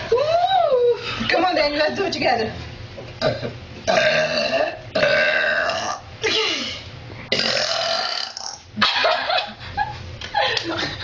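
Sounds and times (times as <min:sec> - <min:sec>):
woman burping: 0:03.2 - 0:08.9.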